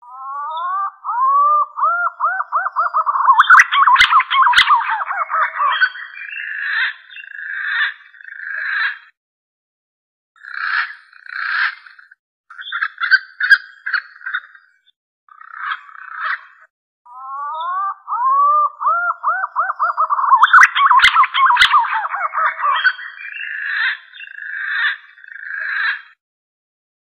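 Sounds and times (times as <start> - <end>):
pigeon calling: 0.1 - 7.9, 17.1 - 26.1.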